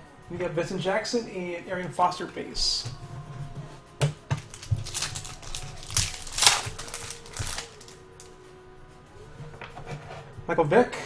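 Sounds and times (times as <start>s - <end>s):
cards and packaging crinkling: 4.2s - 8.4s.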